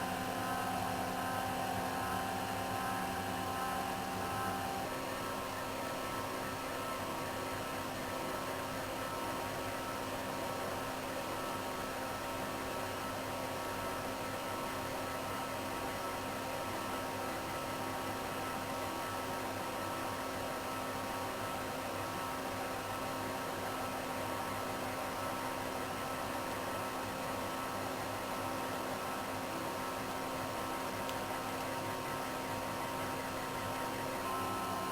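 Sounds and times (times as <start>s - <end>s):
motors humming with hiss: 29.8s - 34.9s.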